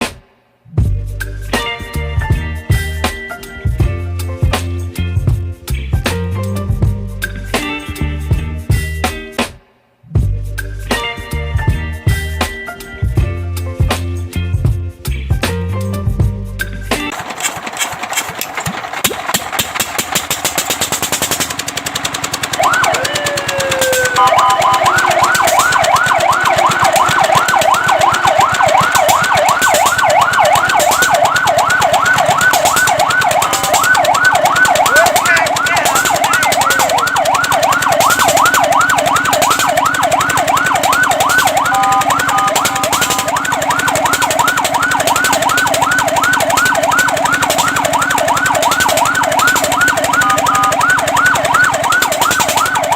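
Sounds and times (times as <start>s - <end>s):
motor rattling: 17.1s - 52.9s
fire truck siren: 22.0s - 52.9s.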